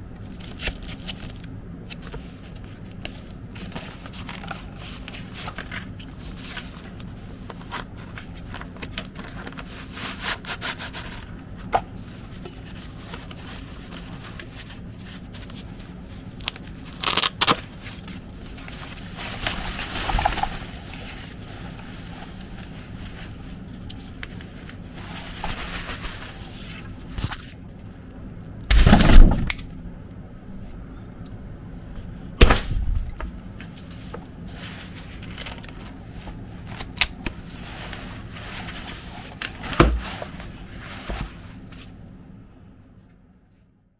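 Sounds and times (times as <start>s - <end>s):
packaging rustling: 12.6s - 27.6s, 33.6s - 41.4s
packaging clicks and scrapes: 33.7s - 41.4s.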